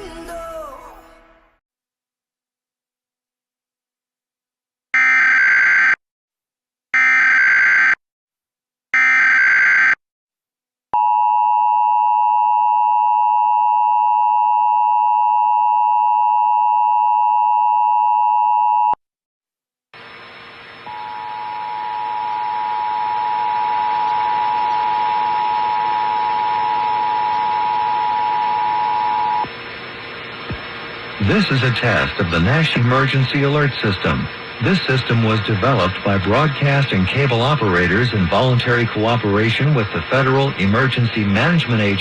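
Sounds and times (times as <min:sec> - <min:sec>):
digital data header bursts: 0:31.2 - 0:42.0.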